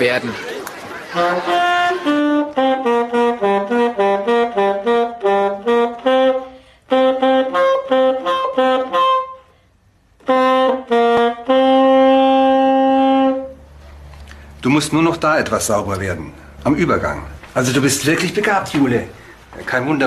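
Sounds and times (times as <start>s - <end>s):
saxophone playing short notes: 1.1s - 9.6s, 10.2s - 13.8s.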